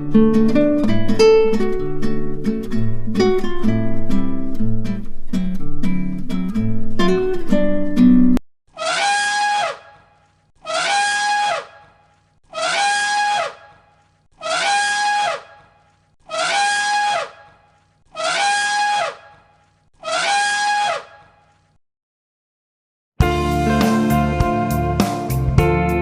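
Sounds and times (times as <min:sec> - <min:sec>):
trumpet-like animal call: 0:08.8 - 0:11.9, 0:12.5 - 0:13.8, 0:14.4 - 0:15.6, 0:16.3 - 0:17.5, 0:18.1 - 0:19.4, 0:20.0 - 0:21.3.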